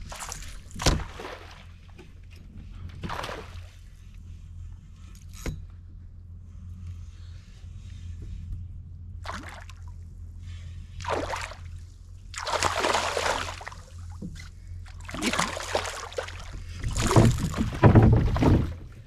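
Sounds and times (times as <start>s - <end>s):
steady low hum: 0.0s - 19.0s
water splashing: 9.2s - 9.8s, 11.0s - 11.7s, 12.3s - 14.3s, 15.0s - 18.8s.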